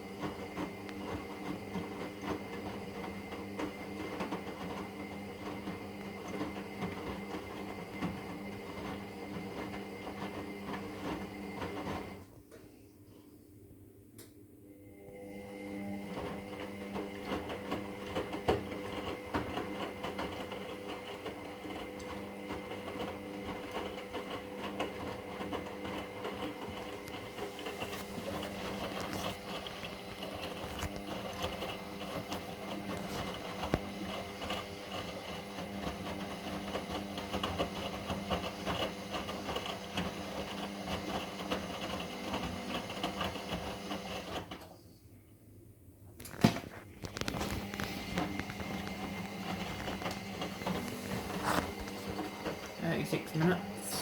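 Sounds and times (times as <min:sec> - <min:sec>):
washing machine motor humming: 0:00.0 - 0:12.3, 0:14.6 - 0:44.7, 0:46.3 - 0:54.0.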